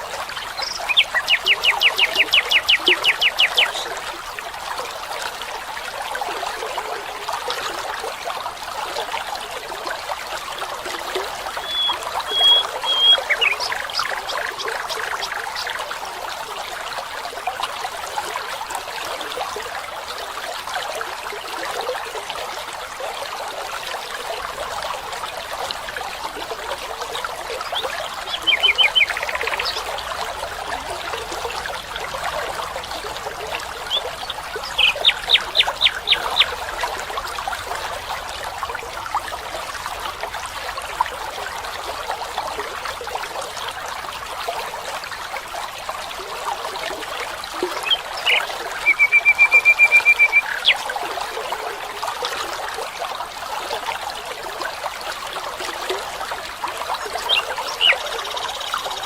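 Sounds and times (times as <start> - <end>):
water trickling: 0.0 - 59.0
short high bird calls: 11.6 - 14.1, 47.8 - 50.8.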